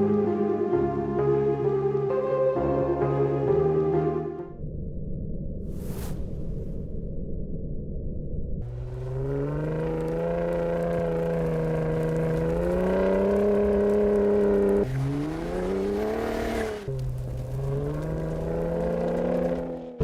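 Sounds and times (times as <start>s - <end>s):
car engine accelerating hard: 8.6s - 20.0s.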